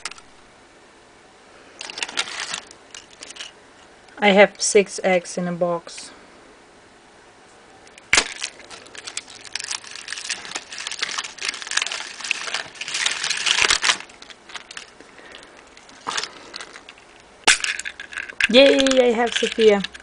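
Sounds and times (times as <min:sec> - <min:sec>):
foil wrapper crinkling: 0:01.8 - 0:03.5, 0:08.1 - 0:20.0.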